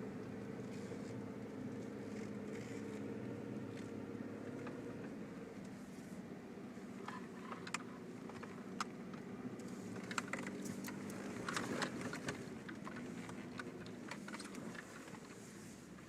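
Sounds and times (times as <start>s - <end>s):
vehicle engine running: 0.0s - 16.0s
sharp clicks and crackles: 7.0s - 15.4s.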